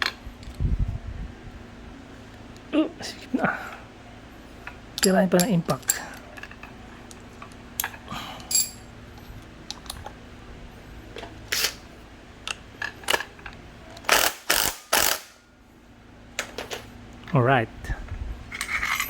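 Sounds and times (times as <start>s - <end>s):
metal tools clicking: 5.0s - 8.9s
impact wrench driving a bolt: 14.0s - 15.4s.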